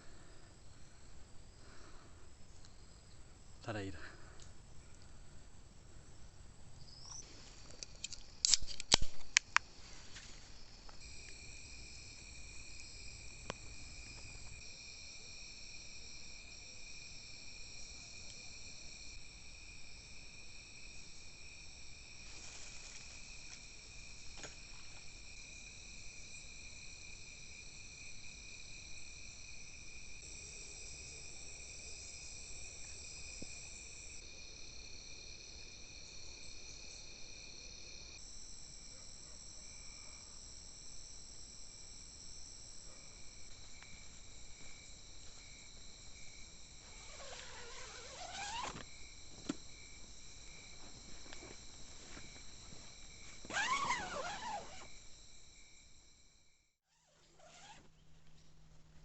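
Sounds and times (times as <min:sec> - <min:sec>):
insects trilling: 0:00.0 - 0:05.4, 0:06.0 - 0:58.6
sharp clicks: 0:07.8 - 0:09.6.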